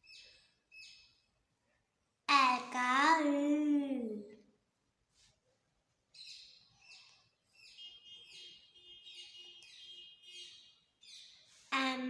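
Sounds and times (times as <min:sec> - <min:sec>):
faint bird chirping: 0:00.0 - 0:01.9, 0:06.0 - 0:12.0.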